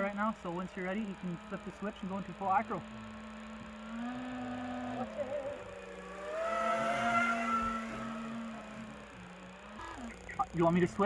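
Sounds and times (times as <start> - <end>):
quadcopter motors whining: 0.0 - 11.0.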